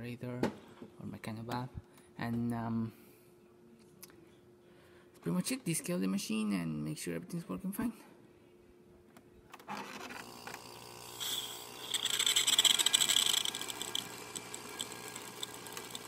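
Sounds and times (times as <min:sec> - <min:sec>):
espresso machine pump hum: 0:09.7 - 0:16.0.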